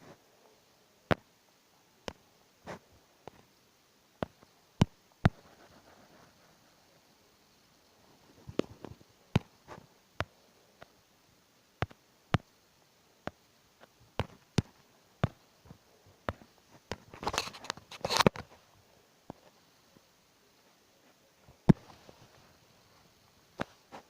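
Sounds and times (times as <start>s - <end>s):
sharp clicks and taps: 11.8s - 12.6s, 13.2s - 18.5s.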